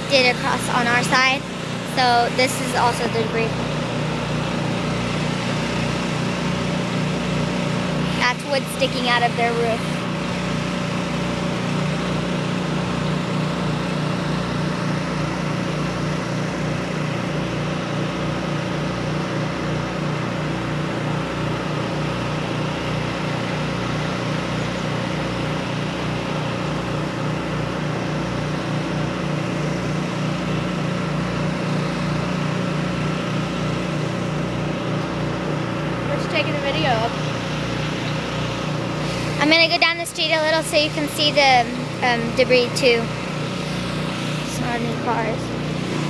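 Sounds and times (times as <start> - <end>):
motor humming: 0.0 - 46.0.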